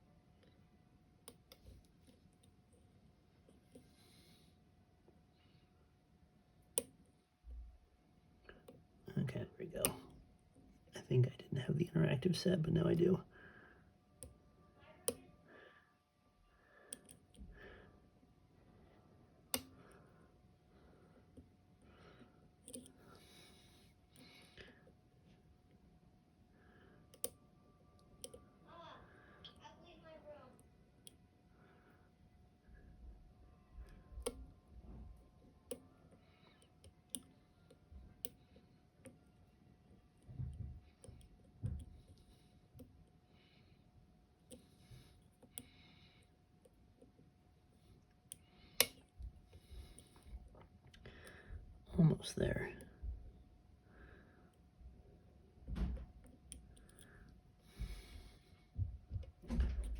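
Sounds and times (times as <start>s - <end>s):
lock pick clicking: 22.6s - 22.9s, 48.3s - 49.1s.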